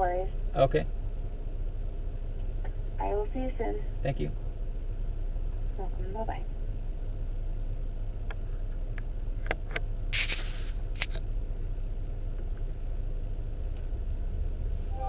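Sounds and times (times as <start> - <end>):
low vehicle rumble: 0.0 - 15.0
rustling scrape: 10.2 - 11.2.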